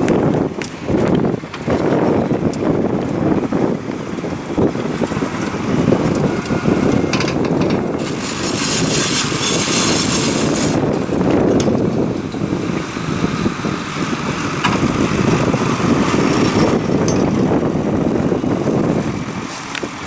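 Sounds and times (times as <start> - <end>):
tractor engine under load: 0.0 - 20.0
wind buffeting microphone: 0.0 - 20.0.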